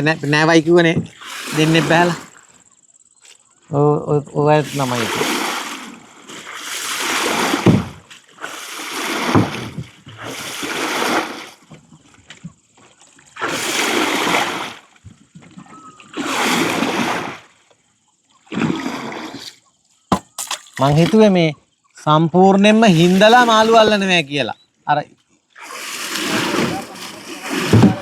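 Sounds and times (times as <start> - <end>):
water splashing heavily: 1.1 - 2.4, 4.6 - 11.7, 13.1 - 15.0, 15.9 - 17.6, 18.5 - 19.5, 22.6 - 24.3, 25.6 - 28.0
dull thump in water: 7.1 - 8.1, 9.0 - 10.0, 26.2 - 28.0.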